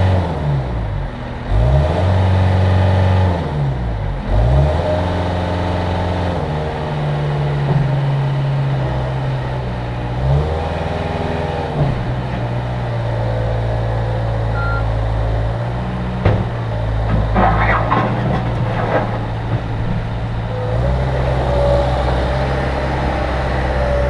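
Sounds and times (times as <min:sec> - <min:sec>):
diesel engine running: 0:05.2 - 0:24.0
higher tone rising and falling: 0:14.6 - 0:14.9.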